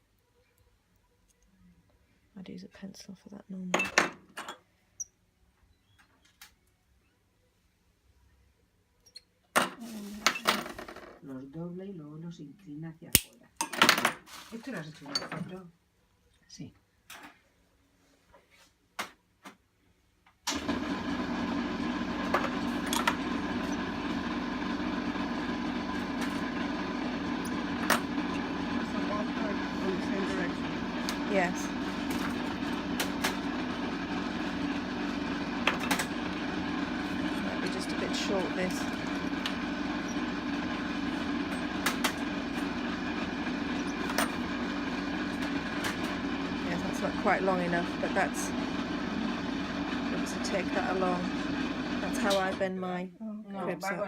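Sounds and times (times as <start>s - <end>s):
machine motor humming and whining: 20.6s - 52.6s.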